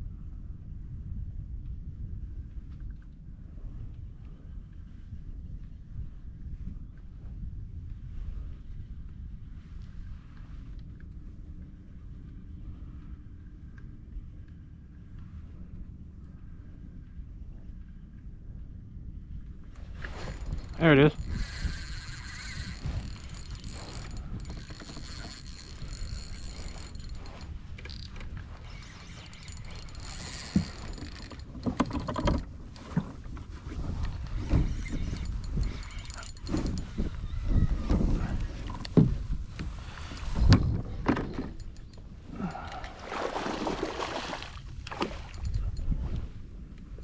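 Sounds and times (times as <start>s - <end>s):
fishing reel ratcheting clicks: 20.2s - 32.4s, 34.8s - 37.1s
water splashing against a kayak: 42.6s - 45.9s.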